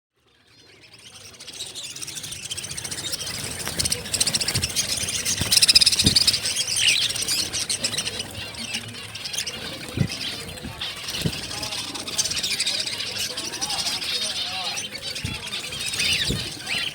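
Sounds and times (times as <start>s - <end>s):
small birds chirping: 0.2s - 16.9s.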